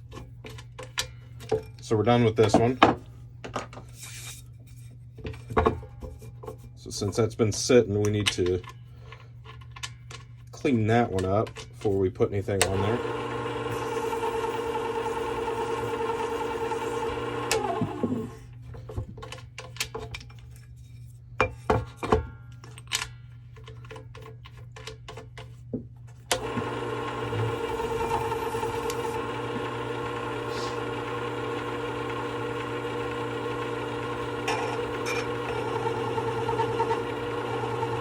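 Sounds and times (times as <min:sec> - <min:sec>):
sharpener motor running: 0:12.6 - 0:18.4, 0:26.3 - 0:38.0.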